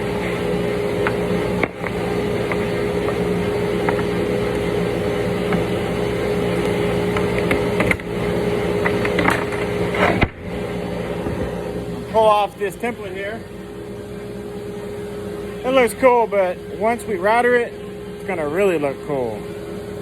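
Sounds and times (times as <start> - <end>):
electric motor hum: 0.0 - 20.0.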